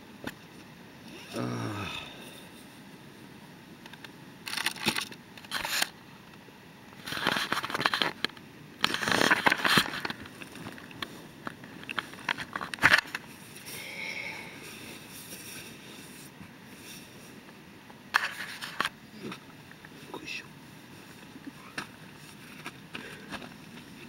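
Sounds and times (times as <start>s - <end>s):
plastic crinkling and rustling: 4.5s - 6.0s, 7.0s - 13.7s.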